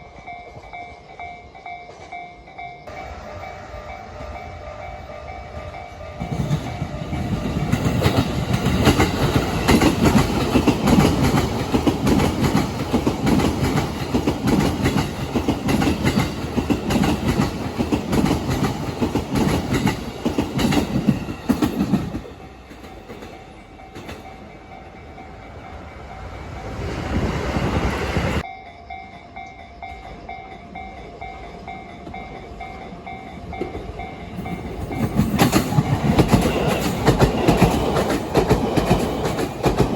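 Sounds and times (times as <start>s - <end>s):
train wheels clattering over joints: 6.2s - 24.5s, 33.6s - 39.9s.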